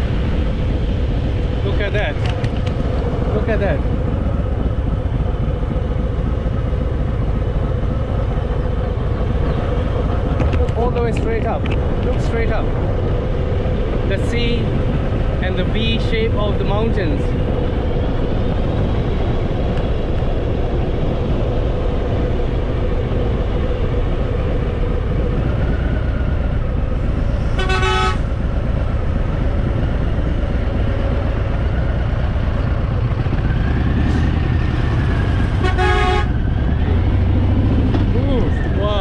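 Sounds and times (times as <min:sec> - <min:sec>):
motorcycle engine rumbling: 0:00.0 - 0:39.0
horn toots: 0:27.5 - 0:28.4, 0:35.5 - 0:36.4.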